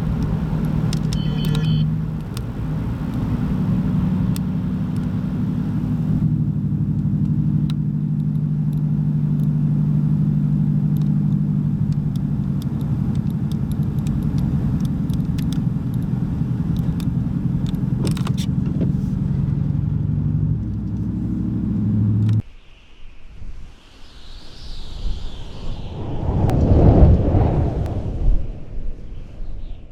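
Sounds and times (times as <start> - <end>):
faint clicks: 0.0 - 3.3, 10.9 - 18.7
vehicle engine humming: 0.0 - 22.4
road noise: 0.0 - 28.4.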